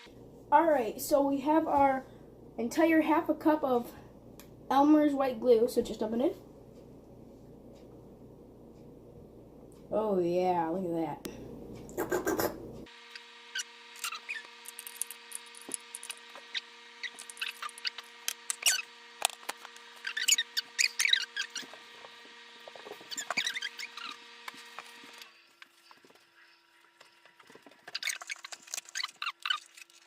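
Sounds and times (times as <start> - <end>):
multi-tone hum: 0.0 - 29.8
glue squelching: 26.9 - 30.0.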